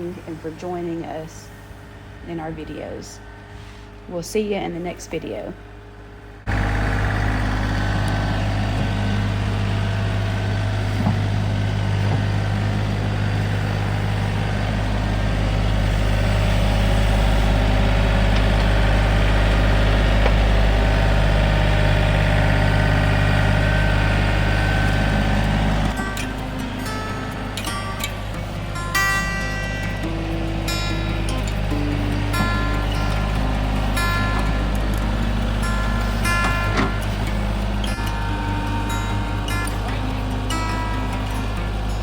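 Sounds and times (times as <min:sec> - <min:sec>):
large engine humming: 0:00.0 - 0:42.0.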